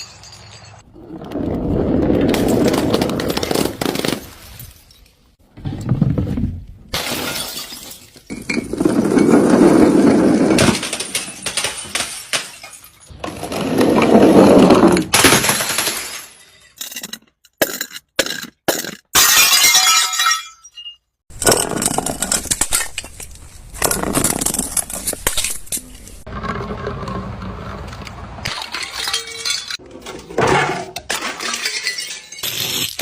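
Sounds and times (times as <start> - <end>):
glass breaking and shattering: 6.9 - 9.2, 10.5 - 13.2, 15.1 - 23.1, 28.5 - 29.8, 30.5 - 33.0.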